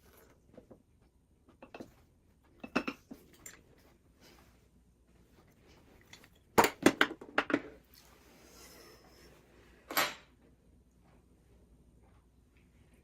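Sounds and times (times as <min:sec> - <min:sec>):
kitchen utensils knocking and clinking: 0:02.6 - 0:03.6.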